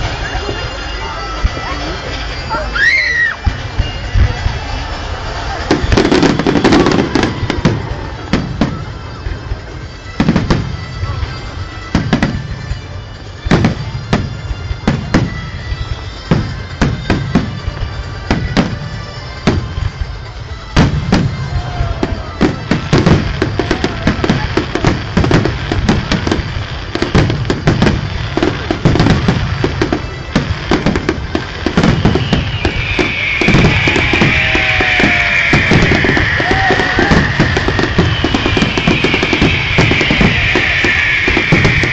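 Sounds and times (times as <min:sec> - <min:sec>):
firework bangs and crackles: 0:00.0 - 0:41.9
music playing: 0:00.0 - 0:41.9.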